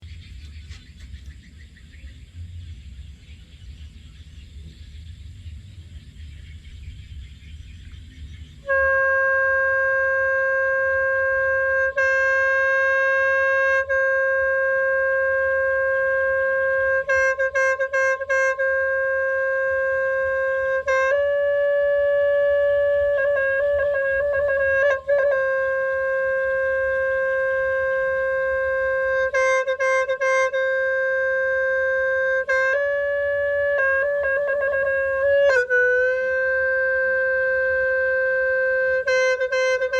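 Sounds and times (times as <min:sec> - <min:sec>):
free-reed horn held note: 0:08.6 - 0:39.9.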